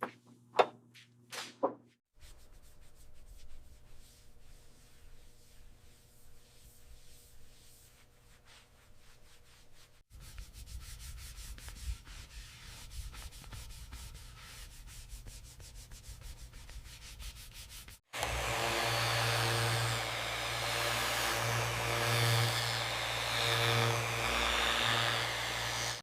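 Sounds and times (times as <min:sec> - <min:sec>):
sanding metal: 0:02.2 - 0:26.0
loud machine hum: 0:18.2 - 0:26.0.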